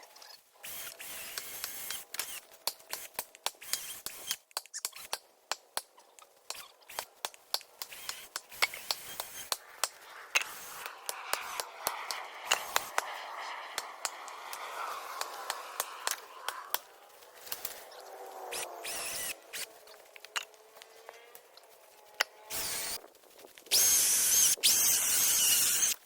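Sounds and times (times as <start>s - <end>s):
dry twigs snapping and crackling: 16.0s - 18.4s, 19.7s - 22.2s, 23.0s - 23.8s.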